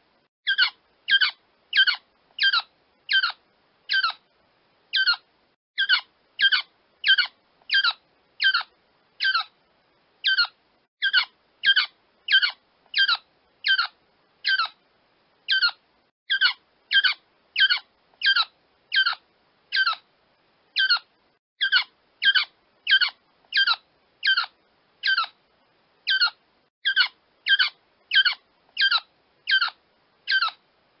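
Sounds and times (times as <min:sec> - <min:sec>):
quail calling: 0:26.1 - 0:30.6.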